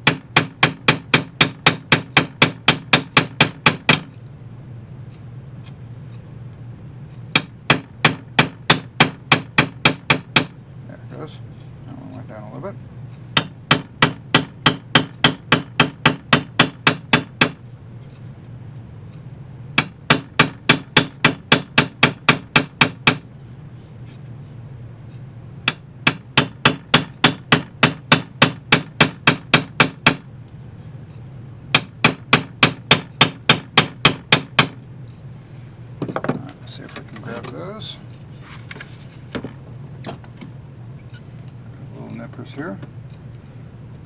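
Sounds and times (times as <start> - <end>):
hammer tapping metal punch: 0.0 - 4.2, 7.3 - 10.6, 13.4 - 17.6, 19.8 - 23.3, 25.6 - 30.3, 31.7 - 34.8.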